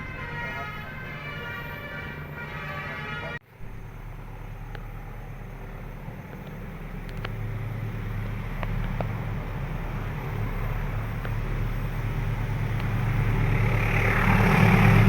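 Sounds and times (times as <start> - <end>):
low engine rumble: 0.0 - 15.0
faint clicks: 6.2 - 7.4.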